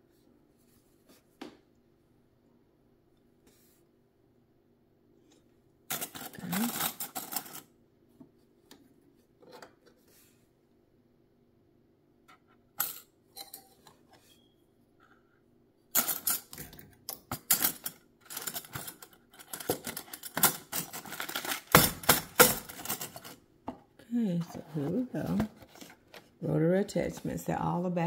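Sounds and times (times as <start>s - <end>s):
metal attachments clinking: 5.9s - 7.6s, 17.3s - 23.4s.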